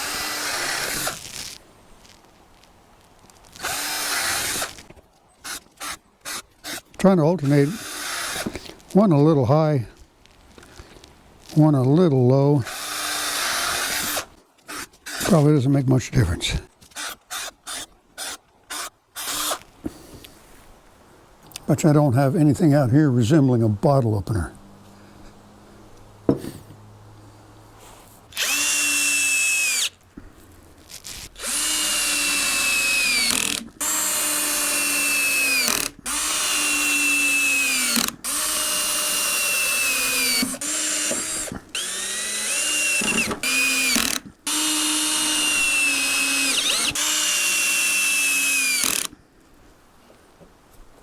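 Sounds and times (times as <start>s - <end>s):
power drill driving screws into wood: 0.0s - 1.6s, 3.6s - 8.7s, 12.7s - 15.4s, 16.9s - 19.6s, 28.3s - 30.0s, 31.1s - 49.2s.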